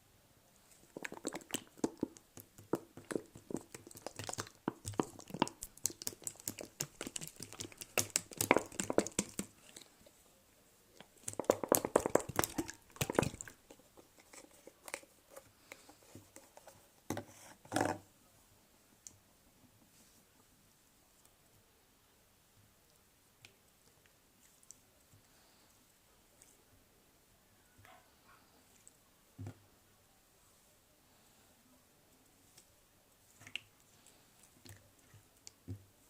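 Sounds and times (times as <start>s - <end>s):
slime squishing with wet pops: 0.8s - 10.0s, 11.0s - 15.1s, 33.3s - 35.9s.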